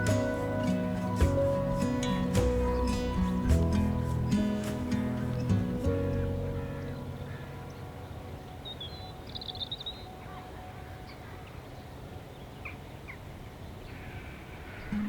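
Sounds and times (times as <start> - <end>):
low outdoor rumble: 0.0 - 8.1
bird chirping: 0.0 - 12.8.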